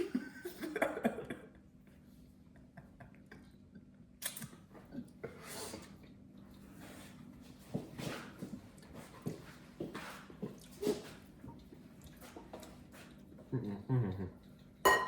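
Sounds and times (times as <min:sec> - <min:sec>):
low steady hum: 0:10.4 - 0:15.0.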